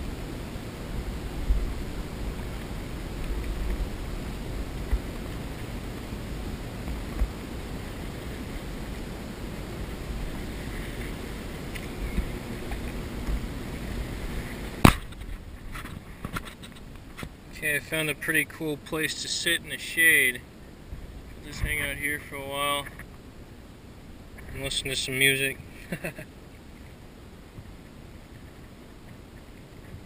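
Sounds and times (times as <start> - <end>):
wind rumble on microphone: 0.0 - 17.5, 20.7 - 23.1
water around kayak: 0.0 - 30.0.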